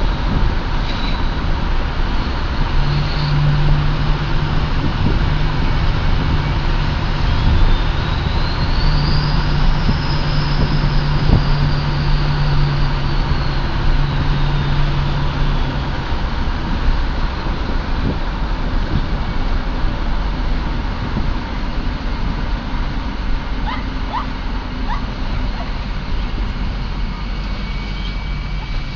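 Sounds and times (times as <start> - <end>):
diesel engine drone: 0.0 - 28.9
road noise: 0.0 - 28.9
turbo whistle: 7.2 - 13.7, 23.6 - 25.7.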